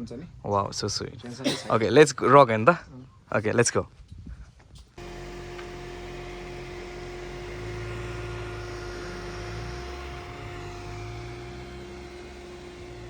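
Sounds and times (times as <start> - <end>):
steady hum: 5.0 - 13.0
vehicle engine running: 5.0 - 13.0.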